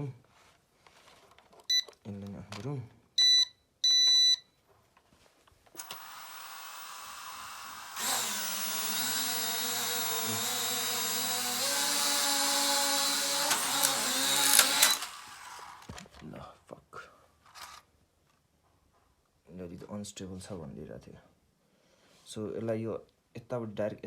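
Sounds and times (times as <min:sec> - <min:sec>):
short electronic beep: 0:03.2 - 0:04.4.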